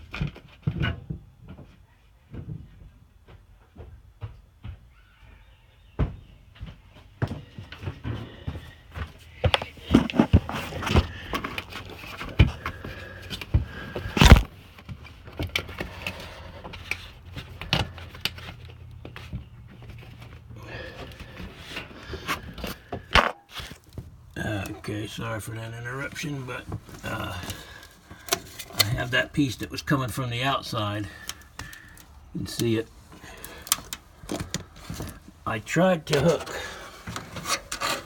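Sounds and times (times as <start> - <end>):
objects knocking and thudding: 6.0 - 24.2.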